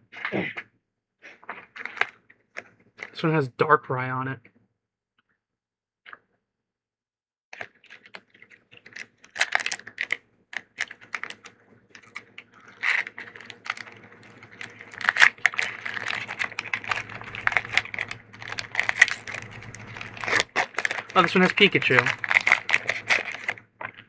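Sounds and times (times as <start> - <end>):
foil wrappers crinkling: 7.8 - 24.0.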